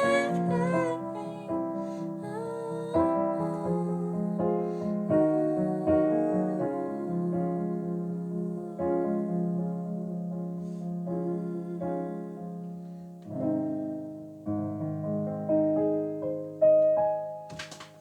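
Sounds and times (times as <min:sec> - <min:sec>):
sharp clicks: 0:17.5 - 0:18.0.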